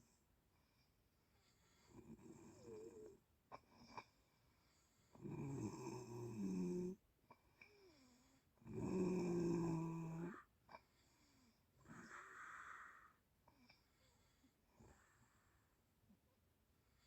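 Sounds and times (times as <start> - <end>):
person snoring: 5.2 - 7.0, 8.6 - 10.5.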